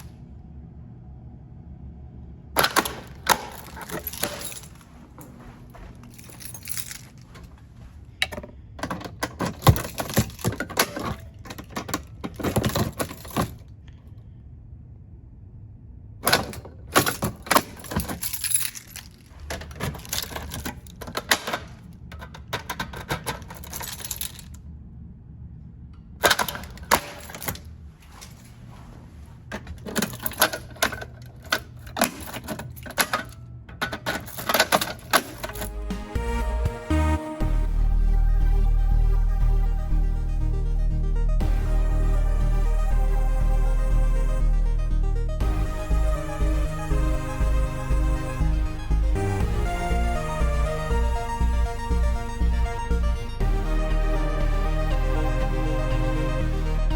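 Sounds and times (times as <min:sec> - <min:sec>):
sharp metal clicks and latch snaps: 0:02.6 - 0:04.5, 0:19.5 - 0:23.9, 0:26.2 - 0:27.6.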